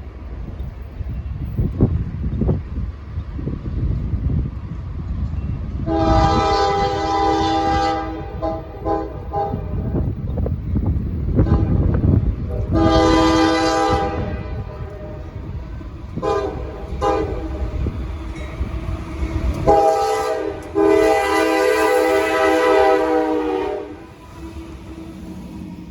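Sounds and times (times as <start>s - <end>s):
freight train rumbling past: 0.0s - 25.9s
locomotive air horn blasts: 5.8s - 10.0s, 11.4s - 11.8s, 12.5s - 15.6s, 16.2s - 18.0s, 19.6s - 25.3s.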